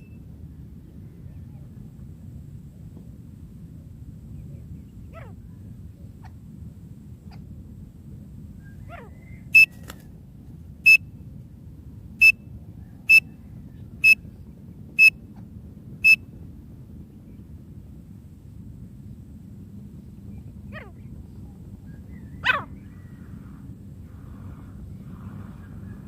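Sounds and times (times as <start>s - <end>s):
low steady rumble: 0.0s - 26.0s
faint falling whistle: 9.2s - 9.8s.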